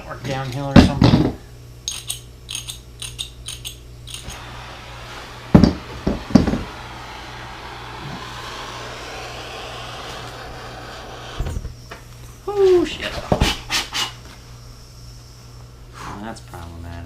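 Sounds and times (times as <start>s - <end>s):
low hum: 1.4s - 12.8s
soldering torch hissing: 4.1s - 12.5s, 13.4s - 15.7s
loud knocks: 5.5s - 6.7s.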